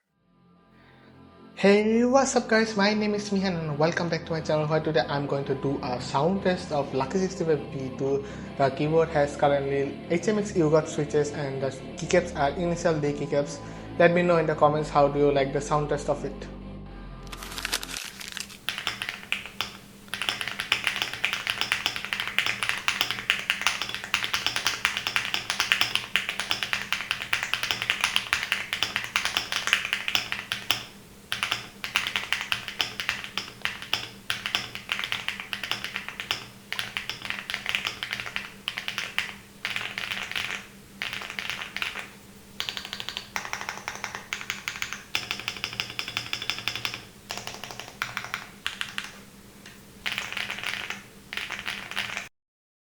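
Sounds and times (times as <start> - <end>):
mechanical keyboard typing: 18.0 - 52.3.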